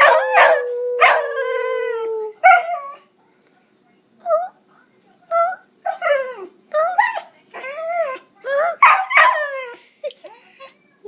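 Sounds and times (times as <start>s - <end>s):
dog howling: 0.0s - 3.0s.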